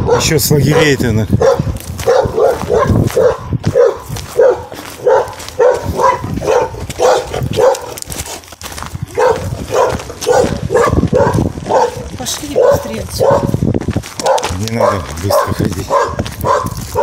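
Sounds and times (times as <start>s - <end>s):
dog barking: 0.0s - 8.1s, 9.1s - 13.6s, 14.2s - 17.0s.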